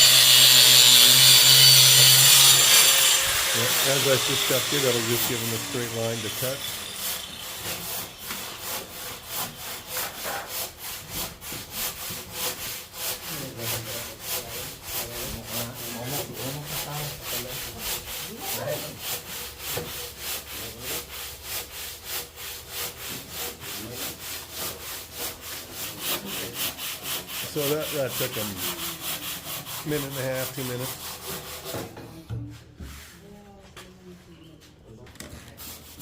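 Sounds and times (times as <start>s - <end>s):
hand saw cutting wall panel: 0.0s - 33.0s.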